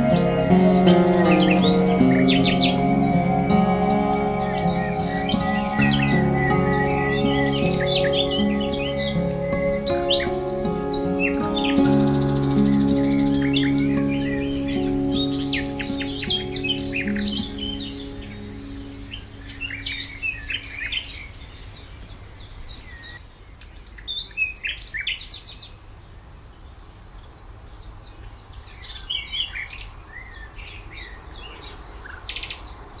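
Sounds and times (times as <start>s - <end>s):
small birds chirping: 0.0s - 33.0s.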